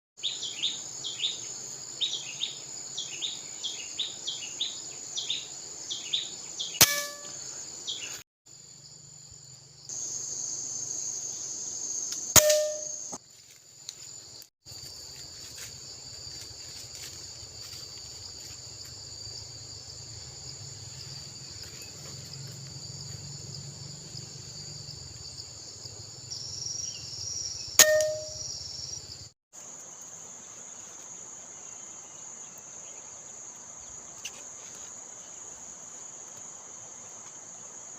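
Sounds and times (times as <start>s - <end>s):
bird chirping: 0.2s - 8.2s, 26.3s - 29.2s
insects droning: 0.2s - 37.9s
air rifle shots with metallic ring: 6.8s - 7.4s, 12.4s - 13.0s, 27.8s - 28.4s.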